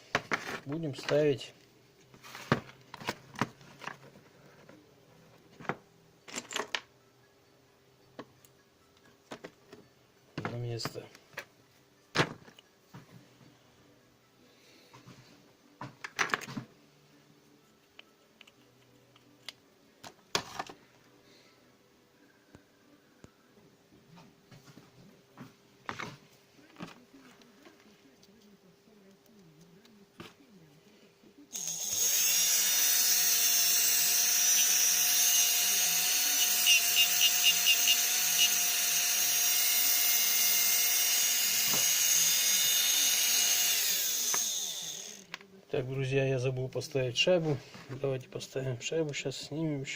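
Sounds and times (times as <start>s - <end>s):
small parts clicking and knocking: 5.6s - 6.9s
drill motor whining: 31.5s - 45.3s.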